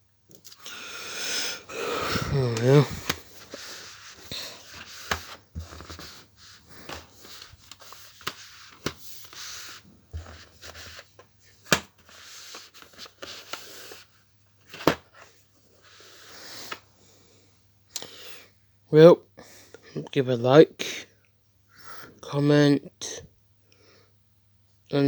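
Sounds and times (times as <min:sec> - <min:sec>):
packaging rustling: 0:01.6 - 0:14.0.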